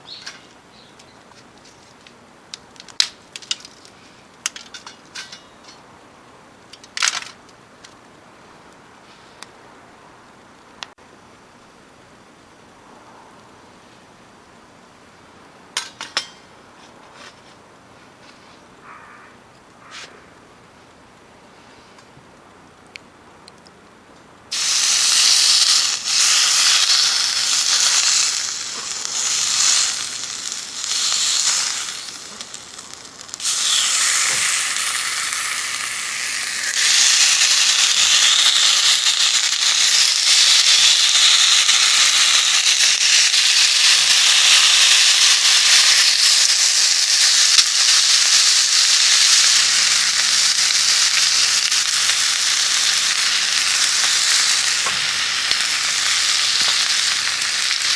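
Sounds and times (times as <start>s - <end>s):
food sizzling in hot pan: 24.5s - 57.9s.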